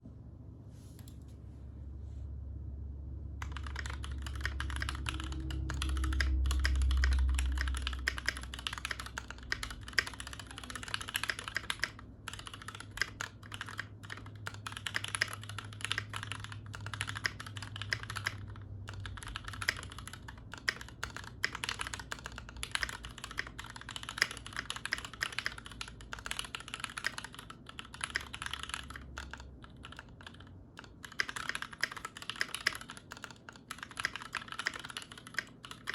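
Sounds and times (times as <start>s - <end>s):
mechanical keyboard typing: 3.4s - 35.9s
low rumble: 4.6s - 8.1s.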